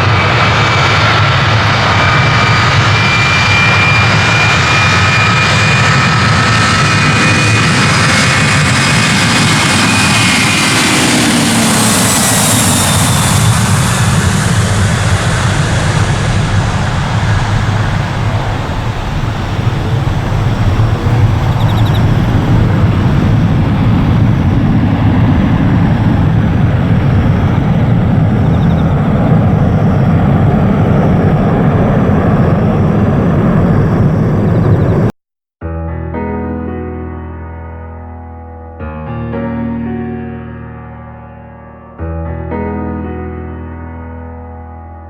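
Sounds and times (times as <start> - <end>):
jet engines roaring: 0.0 - 35.1.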